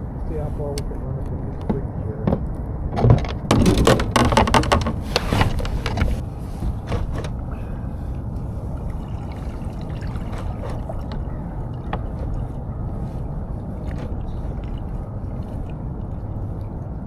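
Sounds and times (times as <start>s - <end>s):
low rumble: 0.0s - 17.0s
clatter: 3.0s - 6.2s
water splashing and trickling: 3.4s - 17.0s.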